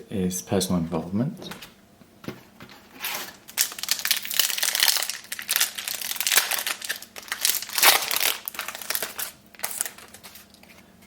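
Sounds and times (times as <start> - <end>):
wrapper crinkling and tearing: 3.0 - 10.8.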